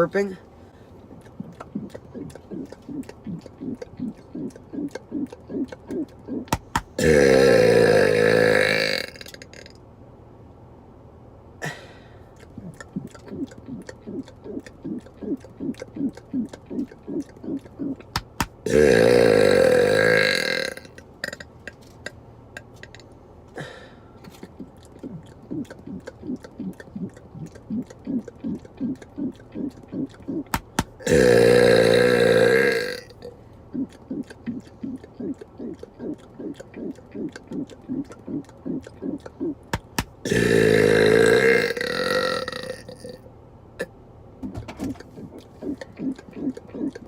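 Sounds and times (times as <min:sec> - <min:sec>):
steady ticking: 0:01.2 - 0:07.2, 0:12.4 - 0:23.1, 0:24.4 - 0:42.8
man burping: 0:07.0 - 0:09.8, 0:11.6 - 0:12.0, 0:18.6 - 0:22.2, 0:31.0 - 0:33.3, 0:40.2 - 0:43.2.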